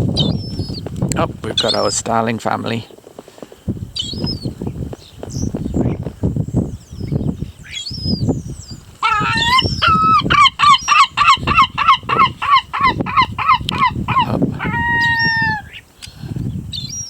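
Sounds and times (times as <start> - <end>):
gull long call: 9.0 - 15.8.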